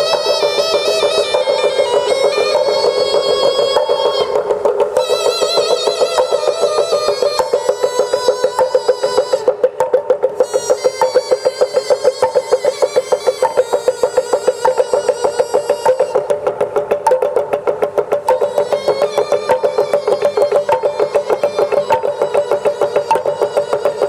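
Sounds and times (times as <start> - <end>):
wind instrument melody with vibrato: 0.0 - 16.8, 18.2 - 24.0
fast pulsing tone: 10.3 - 16.3.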